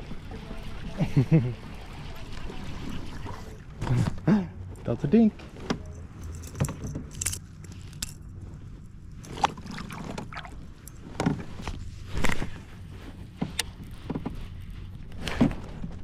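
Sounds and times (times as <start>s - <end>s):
low steady rumble: 0.0s - 16.0s.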